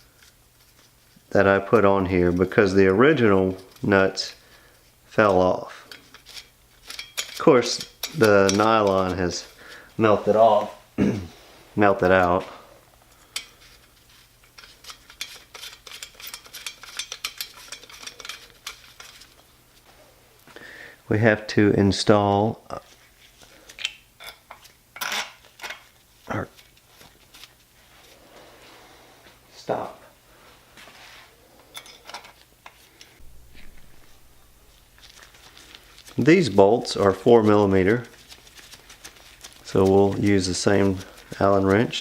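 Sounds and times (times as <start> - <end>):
metal parts and tools clinking: 5.8 - 9.1, 14.4 - 19.4
soft rustling: 22.7 - 23.8, 25.5 - 31.5, 32.4 - 42.0.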